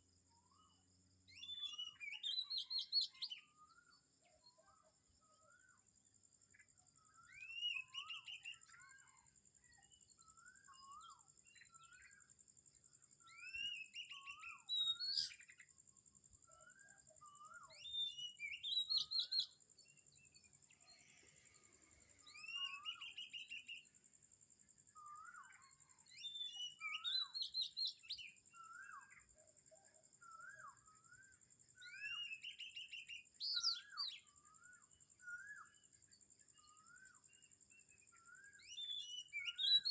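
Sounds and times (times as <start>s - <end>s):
bird singing rising trill: 13.3s - 15.6s, 16.5s - 19.6s, 20.4s - 24.0s, 24.9s - 29.4s, 30.2s - 35.9s.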